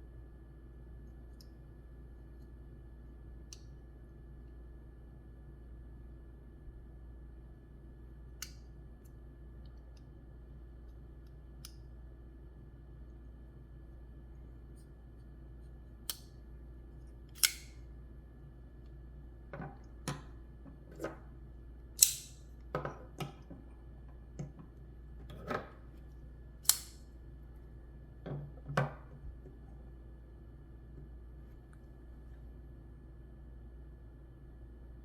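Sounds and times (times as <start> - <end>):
folding knife clicking open and shut: 16.1 - 16.4, 17.3 - 17.8, 22.0 - 22.4, 26.6 - 27.1.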